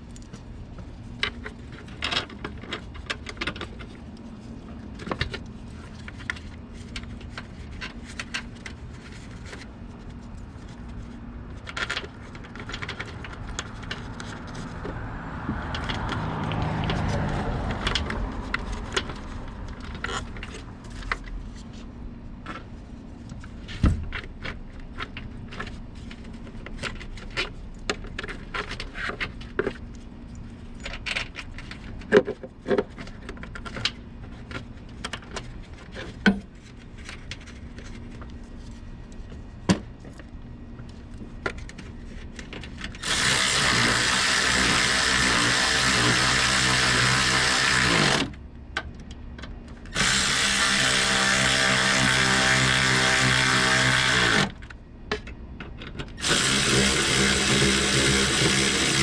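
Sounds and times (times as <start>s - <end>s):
small power tool running: 43.0s - 48.3s, 49.9s - 54.6s, 56.2s - 59.0s.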